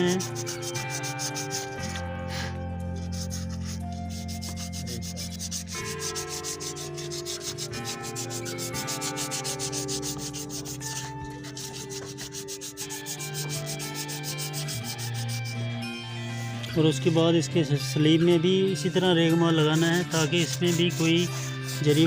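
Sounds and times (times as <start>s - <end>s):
sandpaper rasping on brake linings: 0.0s - 2.0s, 3.0s - 15.7s, 19.5s - 22.0s.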